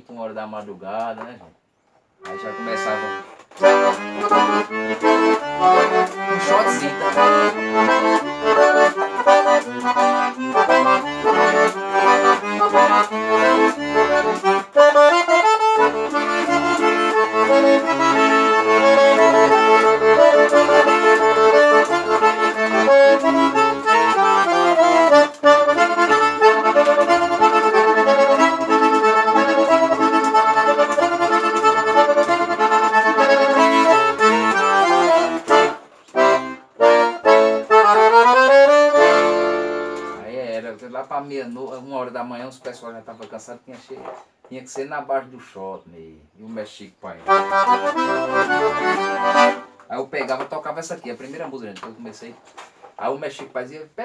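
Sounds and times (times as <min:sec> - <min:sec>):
accordion playing: 0:02.2 - 0:41.8, 0:47.1 - 0:51.6.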